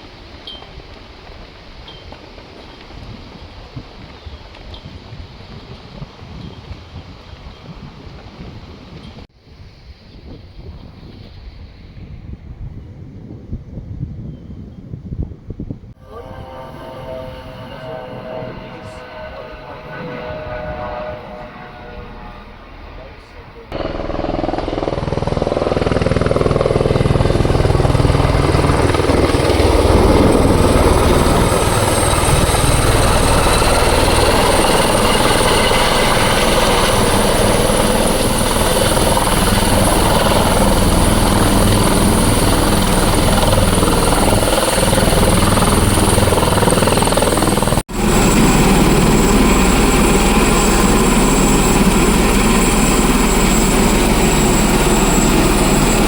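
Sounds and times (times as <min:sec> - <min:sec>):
helicopter rotor and engine: 0:16.0 - 0:56.0
high turbine whine: 0:16.0 - 0:56.0.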